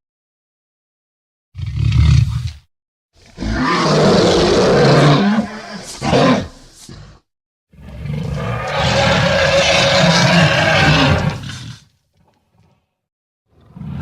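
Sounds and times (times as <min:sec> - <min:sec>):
monster roar: 0:03.4 - 0:06.5, 0:08.2 - 0:11.5.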